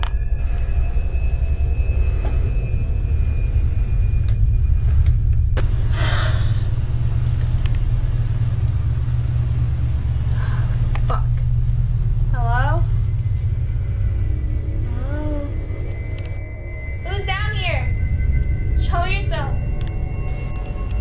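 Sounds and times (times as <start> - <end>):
deep rumble: 0.0 - 21.0.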